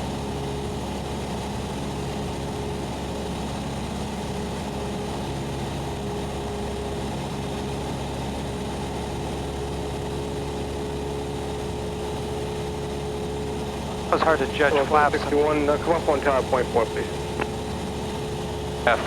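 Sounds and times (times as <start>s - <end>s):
airplane engine and propeller drone: 0.0s - 19.0s.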